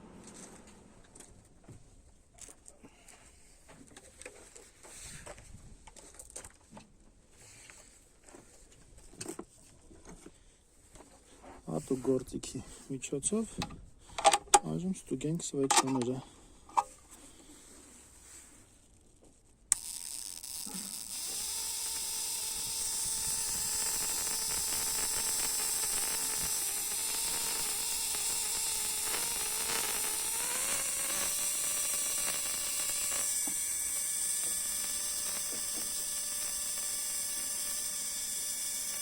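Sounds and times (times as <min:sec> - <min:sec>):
car engine running: 0:00.0 - 0:01.4
spark plugs clicking: 0:19.7 - 0:39.0.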